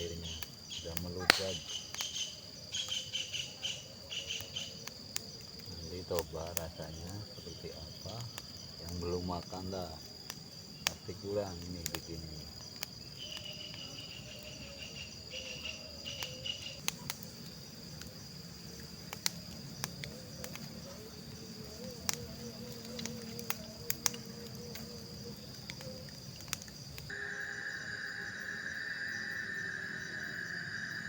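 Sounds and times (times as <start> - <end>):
campfire crackling and popping: 0.0 - 27.3
insects trilling: 0.0 - 31.0
pulsing chirp: 27.1 - 31.0.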